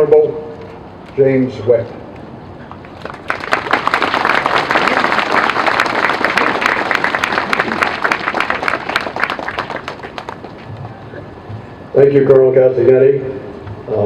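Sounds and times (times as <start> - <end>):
audience applauding: 2.8 - 11.0.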